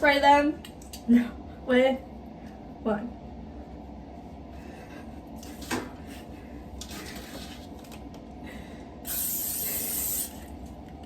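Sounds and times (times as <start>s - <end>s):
cooking spray can hissing: 9.1s - 10.5s.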